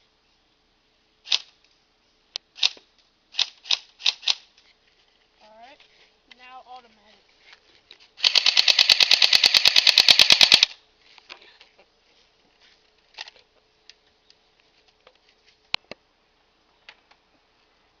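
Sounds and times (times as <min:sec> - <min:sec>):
airsoft rifle automatic fire: 0:08.2 - 0:10.8.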